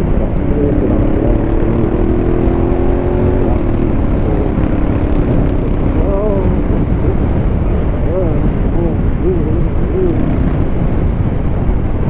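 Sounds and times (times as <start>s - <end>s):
motorcycle engine running: 0.0s - 12.0s
wind rush: 0.0s - 12.0s.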